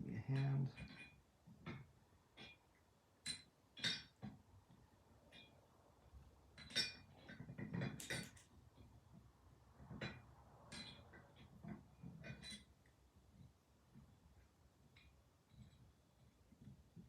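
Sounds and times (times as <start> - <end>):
wrench clinking on metal bolt: 6.6 - 8.5.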